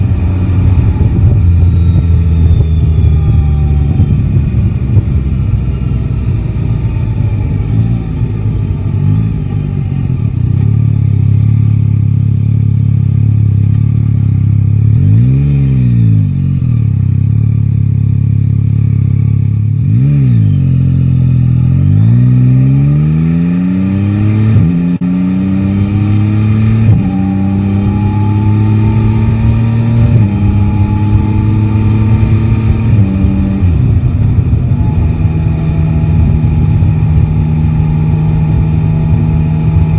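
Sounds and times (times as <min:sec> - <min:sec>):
motorcycle engine revving: 0:00.0 - 0:39.9
motorcycle pulling away shifting gears: 0:19.9 - 0:39.9.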